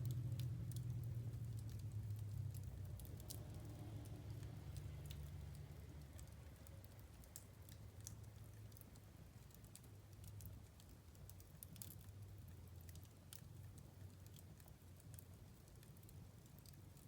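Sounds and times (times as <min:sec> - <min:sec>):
low steady rumble: 0:00.0 - 0:17.0
wood fire crackling: 0:00.0 - 0:17.0.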